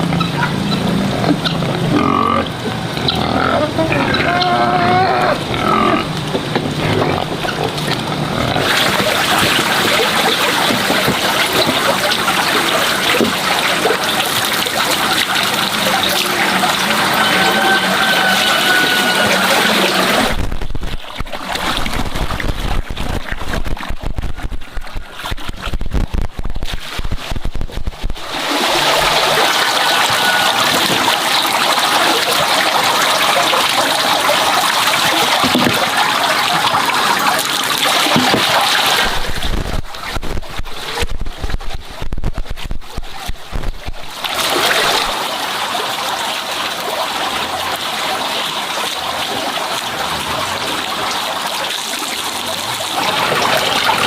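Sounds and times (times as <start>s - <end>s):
water running and splashing: 0.8s - 54.0s
low knocking and rumble: 20.1s - 28.3s.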